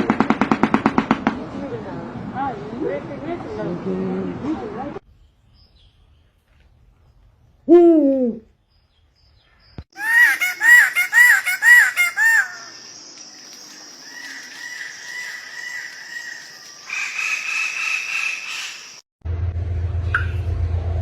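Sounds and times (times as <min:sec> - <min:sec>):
bird calling: 0:09.9 - 0:19.0.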